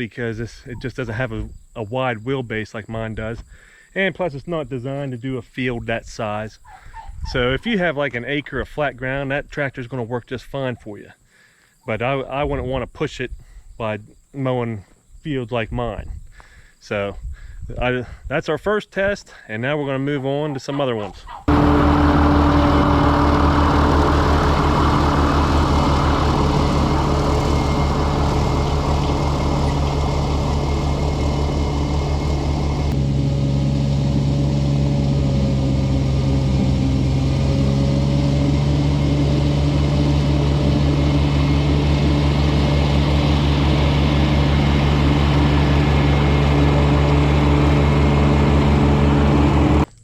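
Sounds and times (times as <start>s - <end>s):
tractor diesel engine running: 21.3s - 49.9s.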